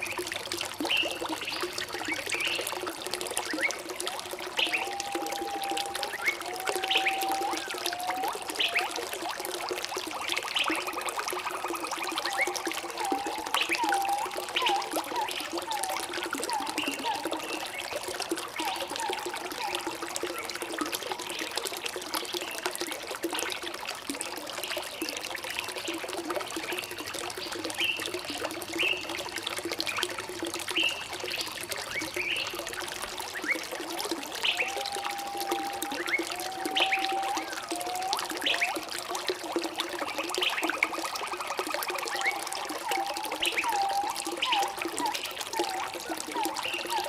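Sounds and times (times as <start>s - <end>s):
water trickling and gurgling: 0.0s - 47.0s
whistled bird notes: 4.6s - 9.0s, 12.3s - 17.7s, 34.4s - 38.8s, 42.1s - 47.0s.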